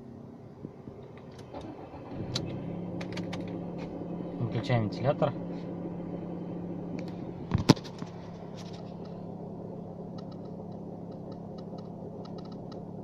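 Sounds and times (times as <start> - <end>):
car engine idling: 0.0 - 13.0
gearbox hum: 0.9 - 13.0
sharp clicks: 10.1 - 12.8.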